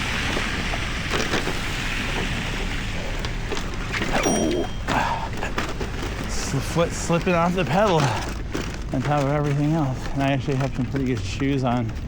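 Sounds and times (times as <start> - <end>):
city street sound: 0.0 - 12.0.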